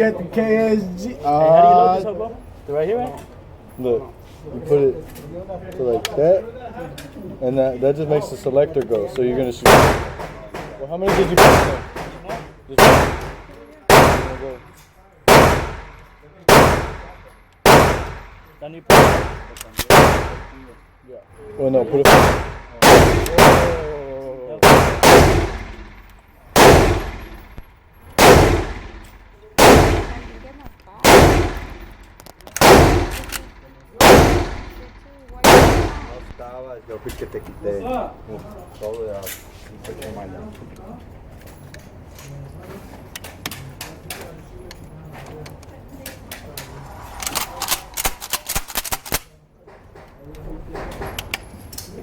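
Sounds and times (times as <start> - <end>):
shotgun shots with echo: 9.6 - 12.2, 12.8 - 14.7, 15.3 - 20.7, 22.0 - 24.0, 24.6 - 26.0, 26.6 - 27.6, 28.2 - 36.4.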